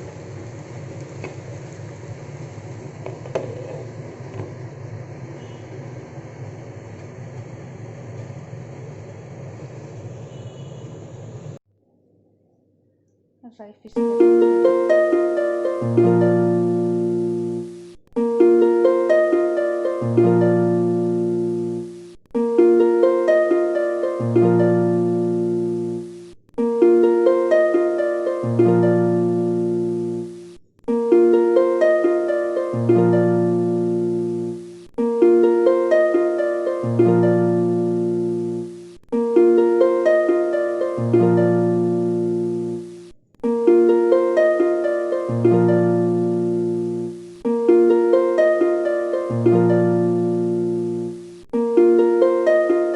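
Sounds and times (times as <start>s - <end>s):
plucked harp-like notes: 13.9s - 52.9s.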